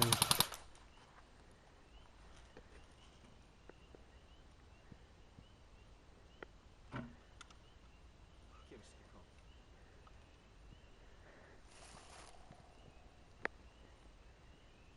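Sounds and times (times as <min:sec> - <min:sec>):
faint bird chirps: 0:00.8 - 0:14.9
faint scattered clicks: 0:07.3 - 0:07.7, 0:13.3 - 0:13.6.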